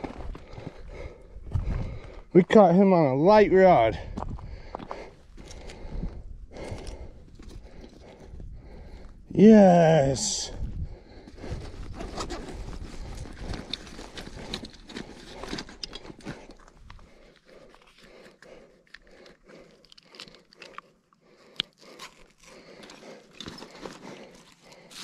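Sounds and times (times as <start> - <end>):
handling rustling and scraping: 11.3 - 20.8, 21.7 - 25.0.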